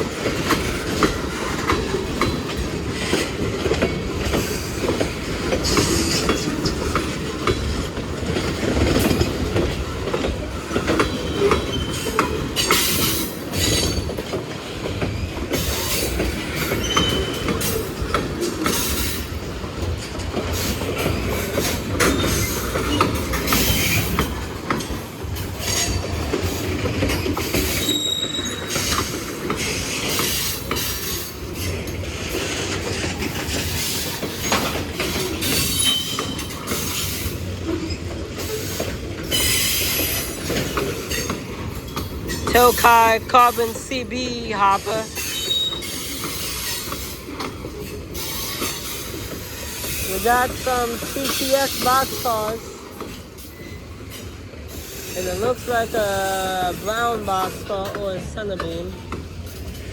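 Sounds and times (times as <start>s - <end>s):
train wheels clicking over rail joints: 0.0s - 59.9s
high-pitched wheel squeals: 27.8s - 28.9s.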